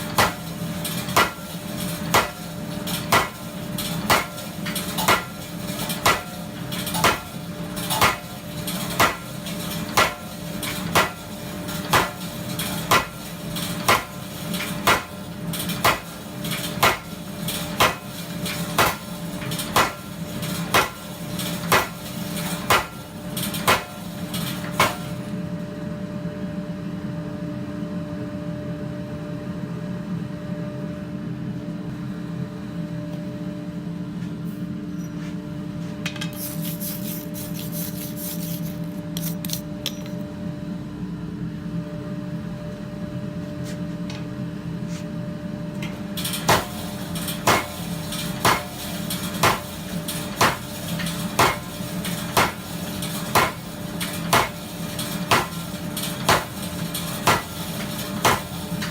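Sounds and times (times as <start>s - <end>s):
power hammer striking hot steel: 0.0s - 25.2s, 46.3s - 58.9s
steady machine hum: 0.0s - 58.9s.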